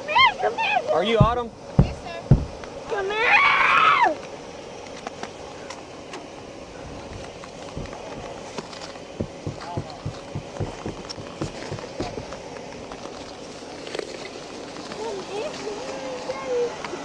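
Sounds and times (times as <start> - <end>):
steady background noise: 0.0 - 17.0
footsteps dull thuds: 1.2 - 2.7, 7.0 - 12.5.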